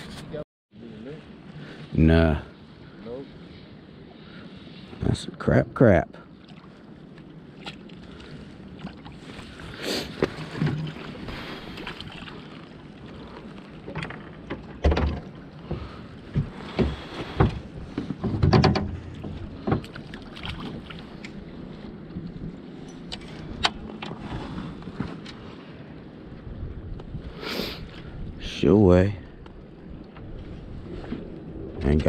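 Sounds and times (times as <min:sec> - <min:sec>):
knocks of gear in a boat: 0:10.2 - 0:12.0, 0:13.8 - 0:21.4, 0:22.8 - 0:25.4
wind noise on microphone: 0:26.2 - 0:32.0.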